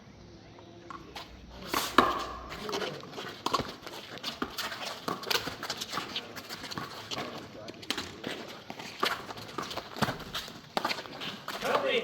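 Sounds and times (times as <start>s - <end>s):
players running footfalls: 0.9s - 12.0s
ball smacking hand and wall: 1.6s - 6.4s.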